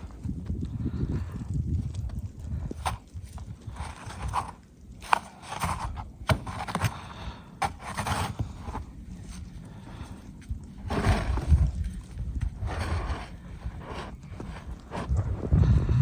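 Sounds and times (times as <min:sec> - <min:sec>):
wind rumbling on microphone: 0:00.0 - 0:16.0
scraping in snow: 0:03.6 - 0:10.1, 0:10.8 - 0:16.0
sharp knocks in snow: 0:05.1 - 0:07.0, 0:10.8 - 0:11.8.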